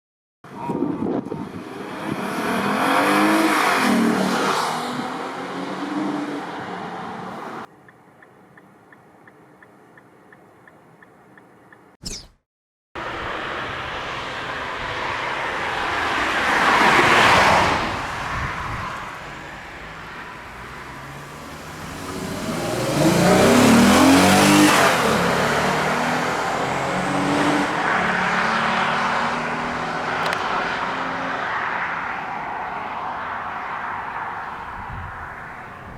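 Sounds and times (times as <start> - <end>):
engine accelerating hard: 13.0 - 33.5
car passing: 13.0 - 35.9.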